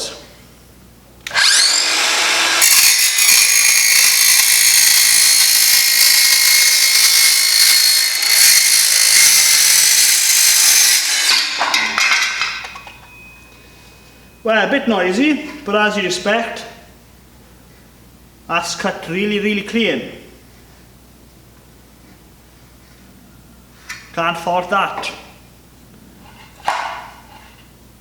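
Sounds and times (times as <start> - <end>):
circular saw cutting metal: 1.3 - 12.9.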